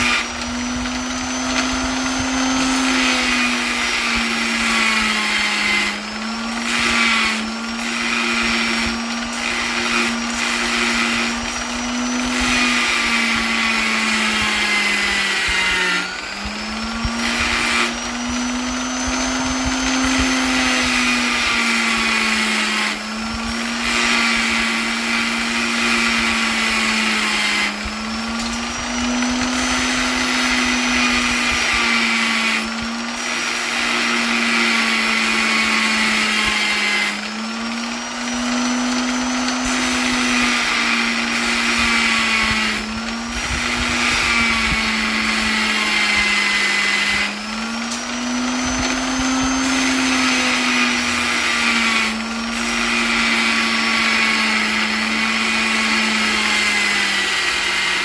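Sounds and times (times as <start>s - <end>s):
electric polisher motor whine: 0.0s - 58.0s.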